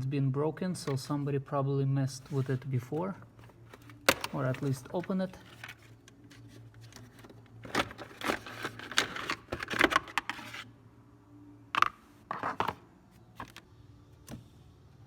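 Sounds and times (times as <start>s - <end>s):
hard plastic clicking and scraping: 3.4s - 10.6s.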